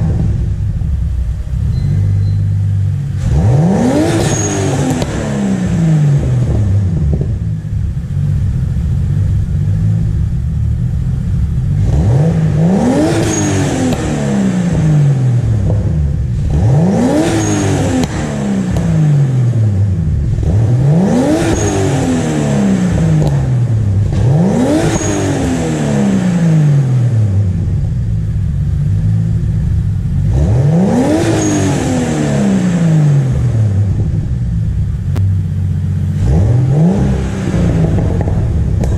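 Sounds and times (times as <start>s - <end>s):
car engine idling and revving: 0.0s - 38.9s
high chirp at rev peak: 1.6s - 2.7s.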